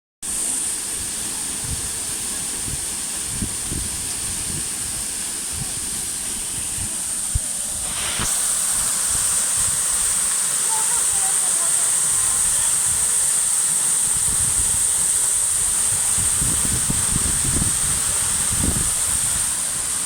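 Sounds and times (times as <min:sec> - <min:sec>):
waterfall rushing: 0:00.3 - 0:20.0.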